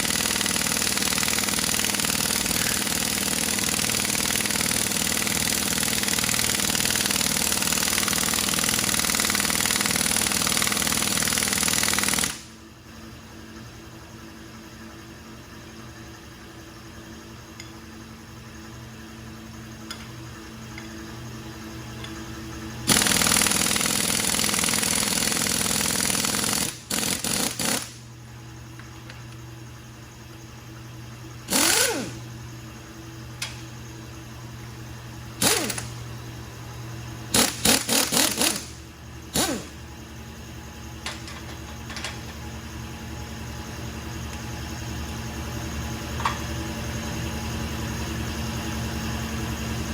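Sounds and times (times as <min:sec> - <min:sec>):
pneumatic tool bursts: 0:00.0 - 0:12.6, 0:22.8 - 0:28.0, 0:31.4 - 0:32.2, 0:35.4 - 0:36.0, 0:37.3 - 0:39.9.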